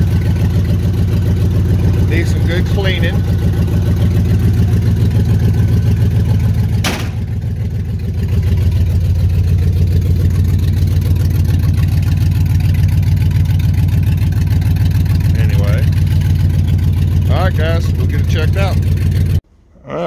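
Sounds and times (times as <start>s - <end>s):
truck engine idling: 0.0s - 19.4s
sharp knock: 6.8s - 7.3s.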